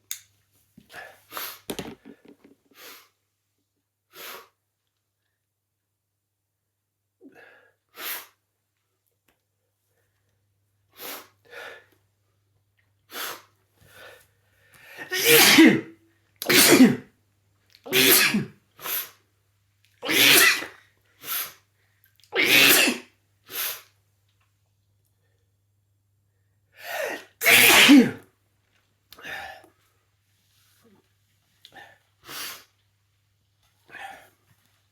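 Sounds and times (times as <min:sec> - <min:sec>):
person sneezing: 0:15.0 - 0:17.1, 0:17.9 - 0:19.1, 0:20.0 - 0:21.5, 0:22.3 - 0:23.8, 0:26.9 - 0:28.2.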